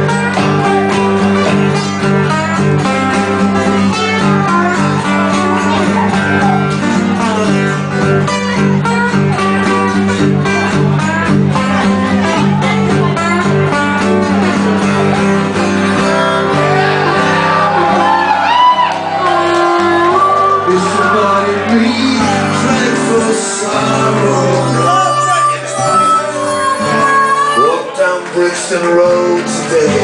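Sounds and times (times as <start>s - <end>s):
bass line: 0.0s - 30.0s
guitars strumming: 0.0s - 30.0s
shouted vocals: 4.7s - 7.5s, 16.4s - 30.0s.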